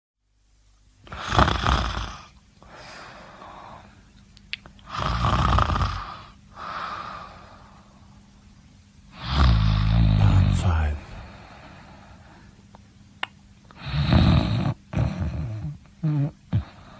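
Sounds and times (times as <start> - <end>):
quiet breaths: 1.0 - 4.2, 5.8 - 12.8, 14.9 - 16.9
person snoring: 9.2 - 11.5.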